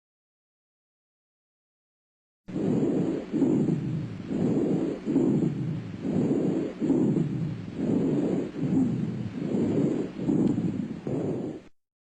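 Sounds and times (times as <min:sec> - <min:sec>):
noisy low-pitched breathing: 0:02.5 - 0:11.8.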